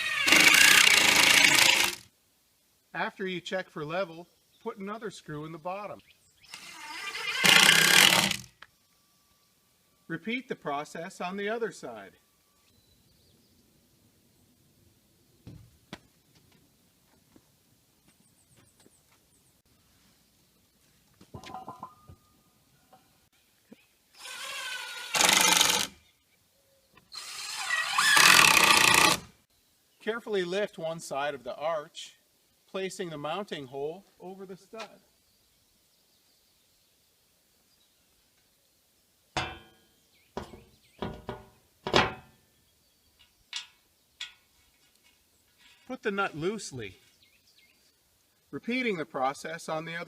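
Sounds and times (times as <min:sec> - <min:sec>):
power driver driving screws into metal: 0:06.6 - 0:08.5, 0:25.1 - 0:25.9, 0:27.6 - 0:29.3
metal arch clanking and knocking: 0:21.3 - 0:22.3, 0:39.4 - 0:42.4.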